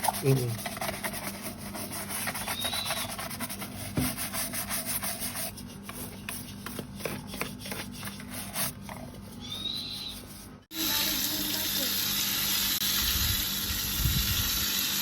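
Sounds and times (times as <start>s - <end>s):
tortoise shell scraping: 0.0s - 10.7s.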